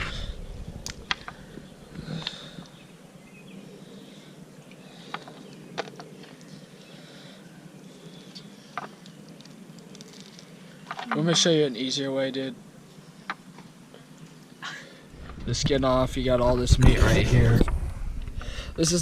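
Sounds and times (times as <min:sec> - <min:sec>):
low steady hum: 0:00.0 - 0:19.0.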